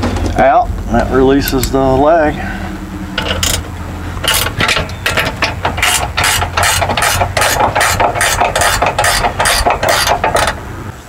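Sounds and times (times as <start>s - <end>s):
ratchet wrench clicking: 3.2s - 10.6s.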